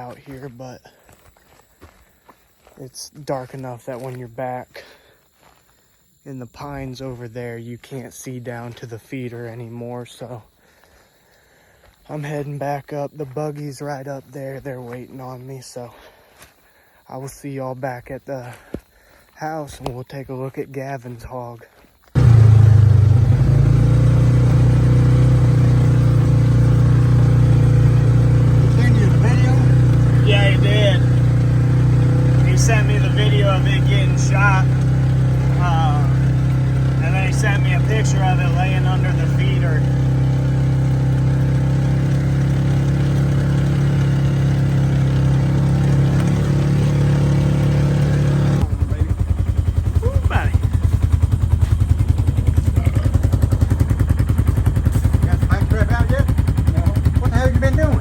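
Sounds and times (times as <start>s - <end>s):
buggy engine running: 22.2s - 58.0s.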